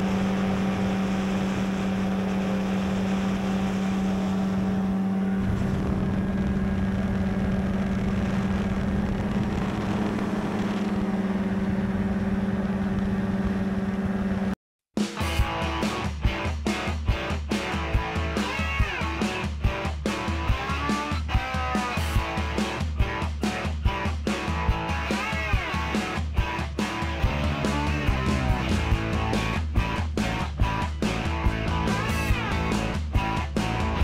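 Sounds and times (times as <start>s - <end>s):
paramotor engine droning: 0.0s - 14.6s
low rumble: 3.7s - 14.6s
guitar music: 15.2s - 34.0s.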